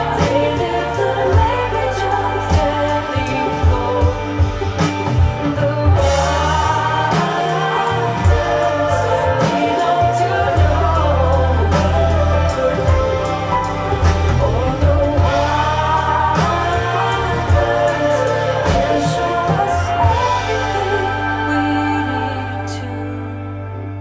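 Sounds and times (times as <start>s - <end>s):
song with singing and strong bass: 0.0s - 24.0s.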